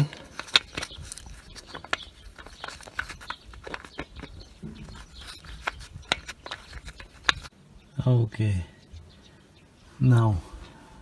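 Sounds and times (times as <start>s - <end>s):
tools clicking and knocking: 0.0s - 7.5s.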